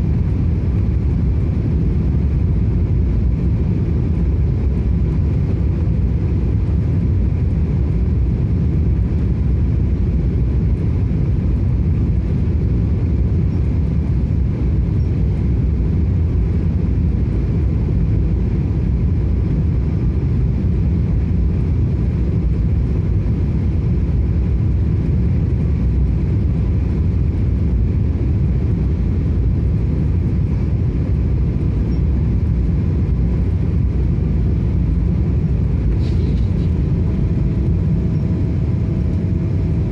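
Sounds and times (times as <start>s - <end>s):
airplane engines rumbling in cabin: 0.0s - 39.9s
rushing air: 29.2s - 39.9s.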